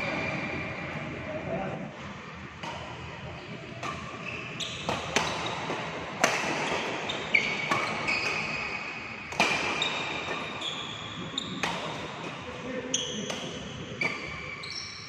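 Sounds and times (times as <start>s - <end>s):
rackets hitting shuttlecock: 2.6s - 3.1s, 3.7s - 10.6s, 11.4s - 12.5s.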